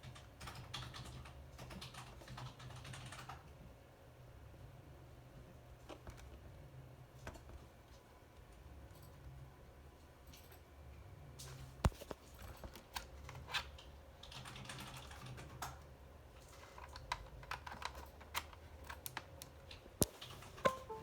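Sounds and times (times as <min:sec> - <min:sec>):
typing on laptop keyboard: 0:00.0 - 0:03.6, 0:14.2 - 0:15.8.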